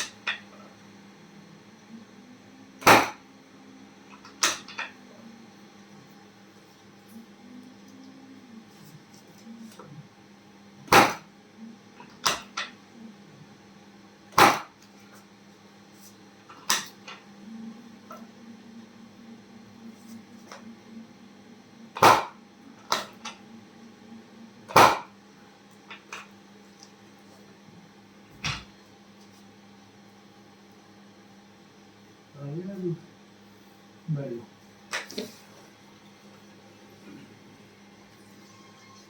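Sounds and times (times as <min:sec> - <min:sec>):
loud sharp knocks: 0:10.9 - 0:11.2, 0:14.4 - 0:14.7.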